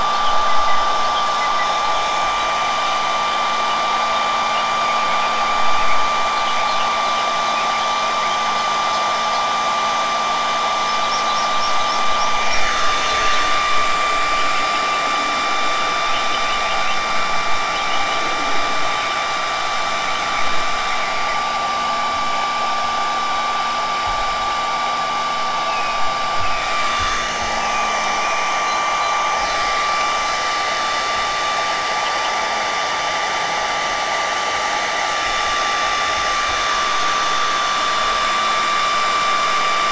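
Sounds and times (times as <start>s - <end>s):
heat gun blowing with fan whine: 0.0s - 39.9s.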